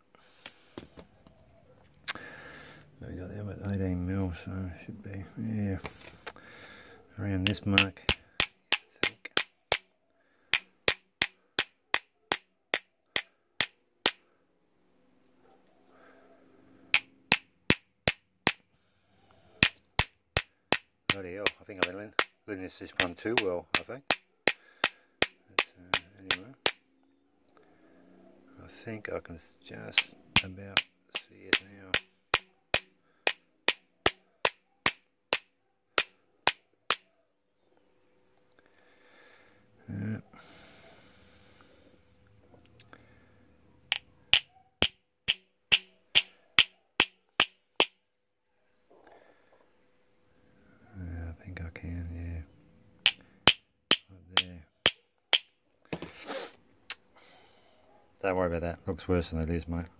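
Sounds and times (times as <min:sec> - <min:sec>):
small hammer tapping on brass: 0:30.0 - 0:37.0, 0:43.9 - 0:48.0
hammer tapping on brass: 0:43.9 - 0:48.0.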